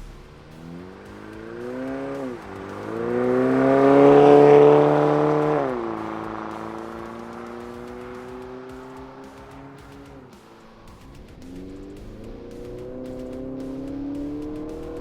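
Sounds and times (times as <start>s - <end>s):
truck engine accelerating: 0.0s - 15.0s.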